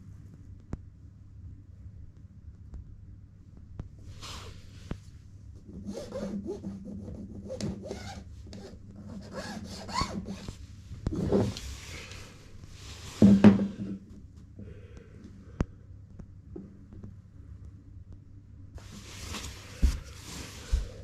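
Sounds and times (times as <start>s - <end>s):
scraping and rubbing strokes: 18.8s - 21.0s.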